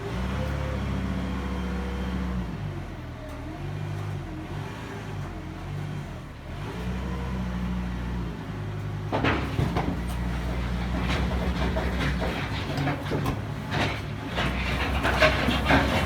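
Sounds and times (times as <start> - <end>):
irregular metallic clattering: 10.5 - 16.0.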